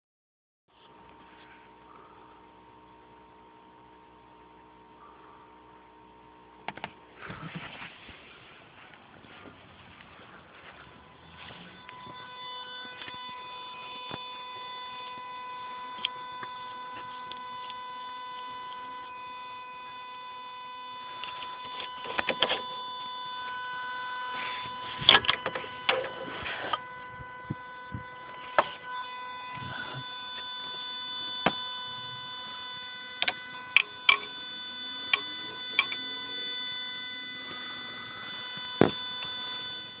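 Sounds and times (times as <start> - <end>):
high-pitched car whine: 0.8 - 40.0.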